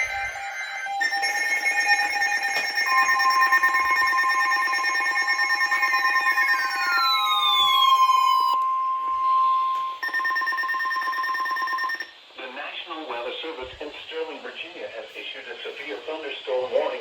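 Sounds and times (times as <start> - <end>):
pulsing beep tones: 0.0 - 12.1
steady high alarm tone: 0.0 - 12.2.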